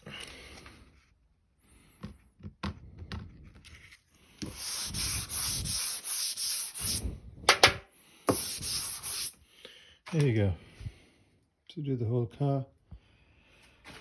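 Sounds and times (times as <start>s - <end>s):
sanding block strokes: 4.4s - 7.1s, 8.3s - 9.4s.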